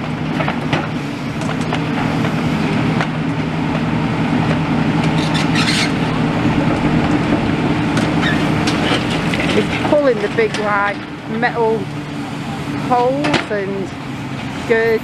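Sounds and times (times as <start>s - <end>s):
heavy machine engine running: 0.0s - 15.0s
metal knocks and clanks: 4.4s - 11.5s
harsh metal scrape: 4.9s - 14.9s.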